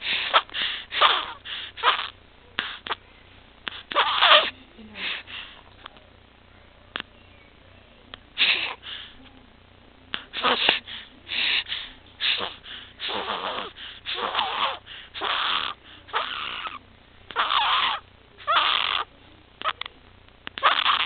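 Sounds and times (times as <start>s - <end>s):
infant's raspy breathing: 0.0s - 3.0s, 3.6s - 5.6s, 8.4s - 9.2s, 10.2s - 19.8s, 20.6s - 21.0s.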